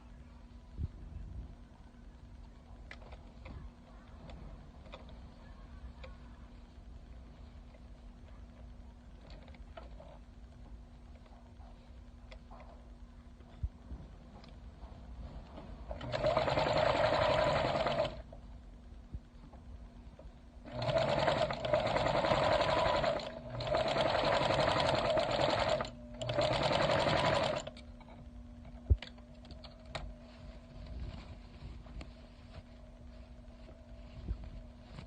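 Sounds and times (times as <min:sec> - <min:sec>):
sewing machine stitching: 0:15.9 - 0:18.2, 0:20.7 - 0:27.8.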